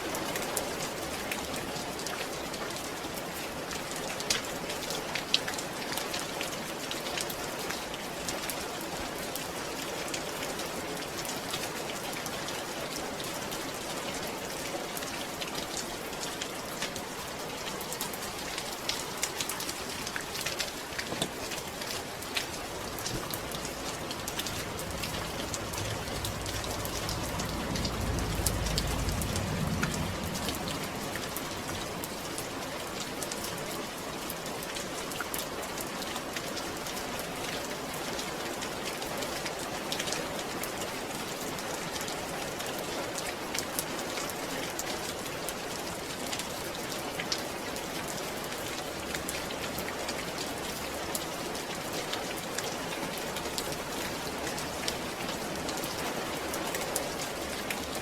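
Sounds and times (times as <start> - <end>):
steady rain falling: 0.0 - 58.0
low rumble: 22.7 - 32.6.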